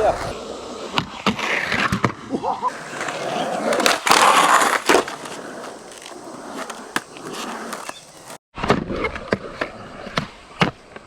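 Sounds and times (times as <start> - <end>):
skateboard wheels rumbling on concrete: 0.0 - 11.0
skateboard clacks: 0.9 - 8.4.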